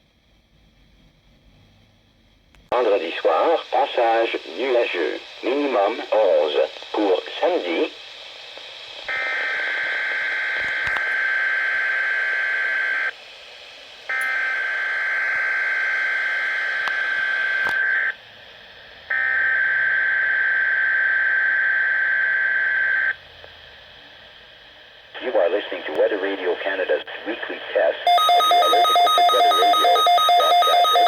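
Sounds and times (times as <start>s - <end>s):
two-tone data bursts: 28.1s - 31.0s.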